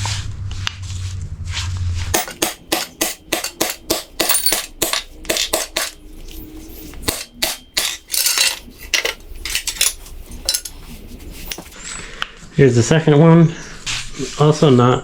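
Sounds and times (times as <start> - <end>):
metal scraping: 2.1 - 11.8
metal tools clinking: 2.2 - 11.8.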